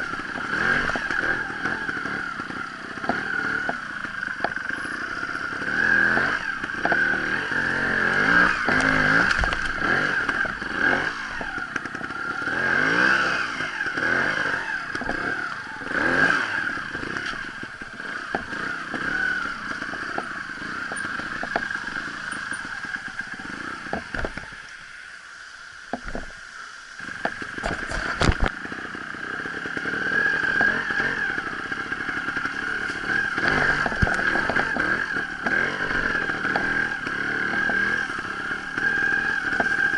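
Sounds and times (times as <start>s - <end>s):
motorcycle engine revving: 0.0s - 24.7s, 27.0s - 39.9s
bike scraping over rough ground: 0.0s - 25.0s, 25.9s - 39.9s.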